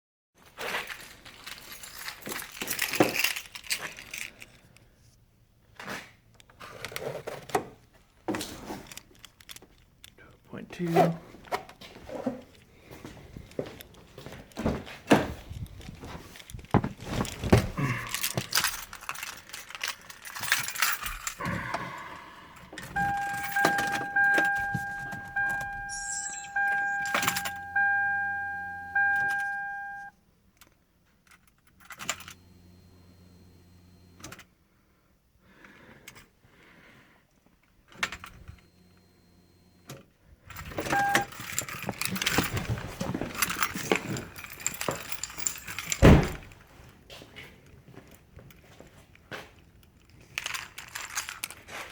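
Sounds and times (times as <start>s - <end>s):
car keys jangling: 0.6s - 4.7s, 17.3s - 30.1s, 40.5s - 46.6s, 49.8s - 51.8s
faint hum: 21.4s - 30.1s
car warning chime dinging: 22.8s - 30.1s, 40.9s - 41.3s.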